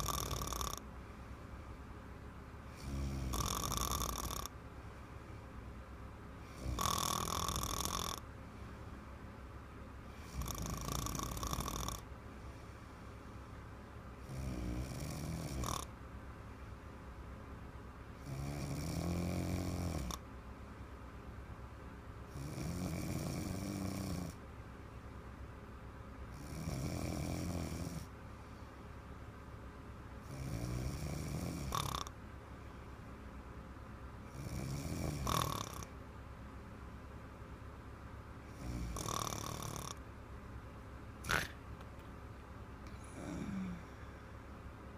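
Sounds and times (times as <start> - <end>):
girl snoring: 0.0 - 0.8, 2.7 - 4.5, 6.5 - 8.2, 10.2 - 12.0, 14.3 - 15.9, 18.2 - 20.2, 22.4 - 24.4, 30.3 - 32.1, 34.3 - 35.9, 38.5 - 40.0, 41.2 - 41.6, 43.0 - 44.0.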